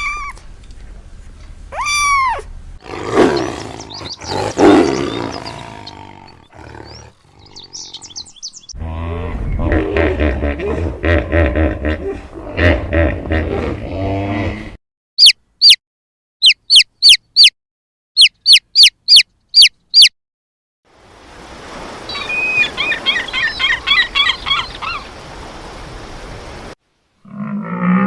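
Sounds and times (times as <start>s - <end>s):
bird chirps: 3.3s - 8.8s, 15.2s - 15.8s, 16.4s - 17.5s, 18.2s - 20.1s.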